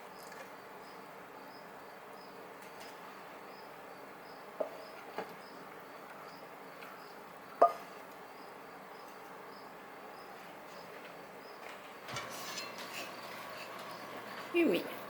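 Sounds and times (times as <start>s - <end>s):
insect chirping: 0.0s - 11.6s.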